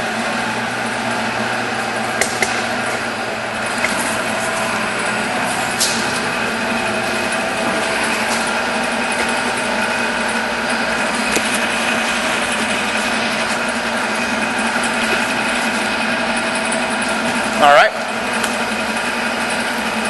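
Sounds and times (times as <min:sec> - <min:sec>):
lathe running: 0:00.0 - 0:20.0.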